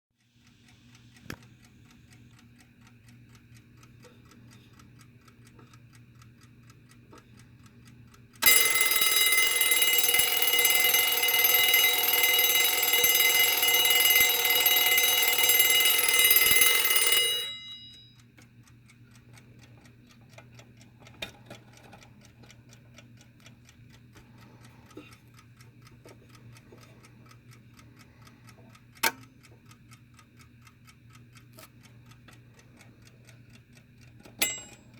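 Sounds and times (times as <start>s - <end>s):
alarm clock ticking: 0.7s - 34.9s
alarm clock bell ringing: 8.4s - 18.2s, 34.4s - 34.9s.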